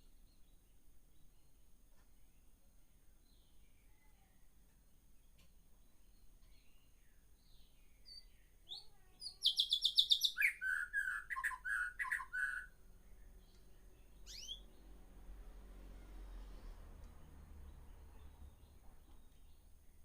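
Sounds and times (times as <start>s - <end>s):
songbird singing: 0.0s - 20.0s.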